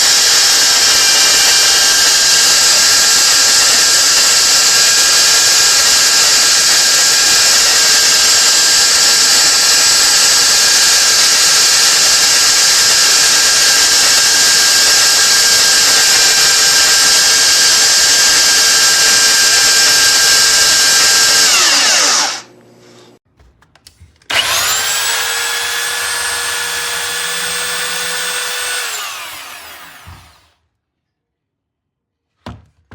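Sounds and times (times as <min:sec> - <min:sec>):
belt sander motor whining: 0:14.6 - 0:22.5, 0:24.3 - 0:30.5.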